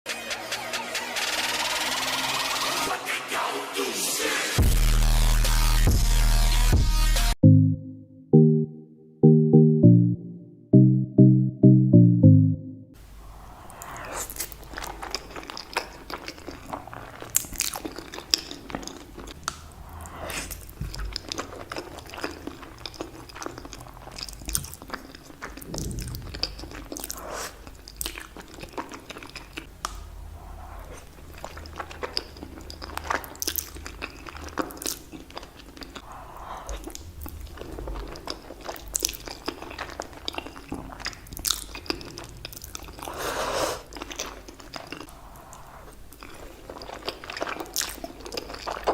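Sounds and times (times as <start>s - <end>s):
person chewing spaghetti: 13.6s - 48.9s.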